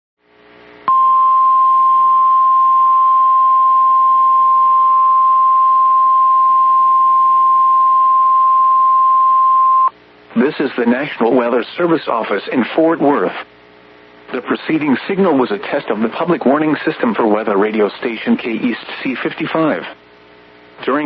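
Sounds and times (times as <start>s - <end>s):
steady loud alarm tone: 0.9s - 9.9s.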